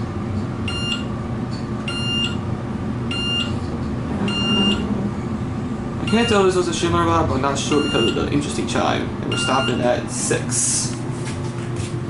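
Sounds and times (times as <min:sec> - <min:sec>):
elevator car humming: 0:00.0 - 0:12.0
short electronic beeps: 0:04.3 - 0:04.9.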